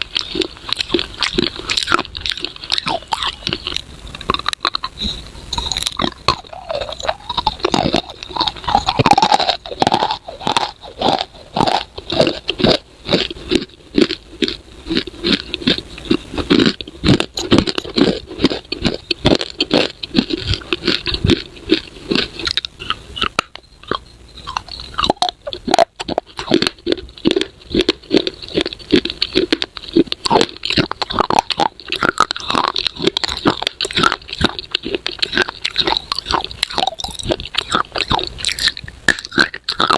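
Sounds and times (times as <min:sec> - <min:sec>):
crunching and chewing clay: 0:00.0 - 0:39.9.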